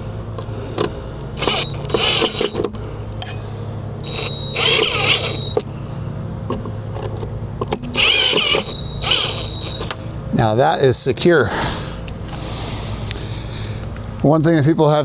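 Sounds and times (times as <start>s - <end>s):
low hum: 0.0s - 10.4s
drill whining: 1.4s - 2.7s, 4.0s - 5.6s, 7.9s - 10.0s.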